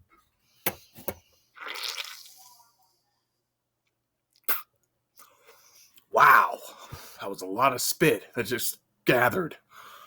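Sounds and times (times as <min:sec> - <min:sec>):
wet mouth smacks: 0:04.4 - 0:05.3.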